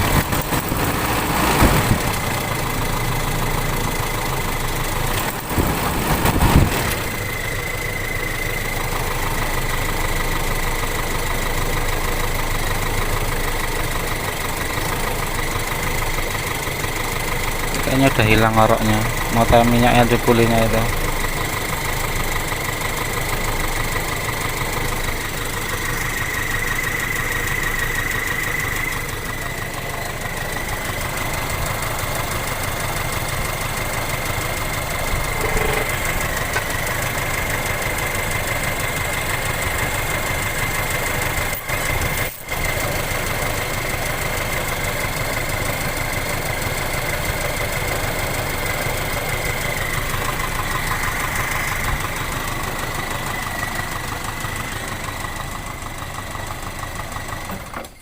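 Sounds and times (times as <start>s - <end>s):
petrol engine idling: 0.0s - 58.0s
high-pitched whine: 35.2s - 36.5s.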